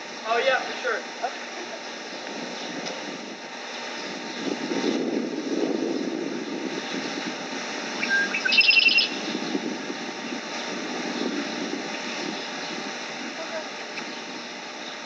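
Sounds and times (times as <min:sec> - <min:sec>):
low motor rumble: 0:00.0 - 0:15.0
high pulsed chirp: 0:07.8 - 0:12.9.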